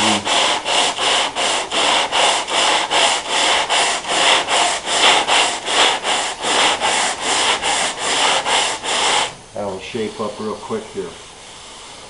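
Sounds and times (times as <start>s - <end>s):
sandpaper rasping on car panel: 0.0s - 9.4s.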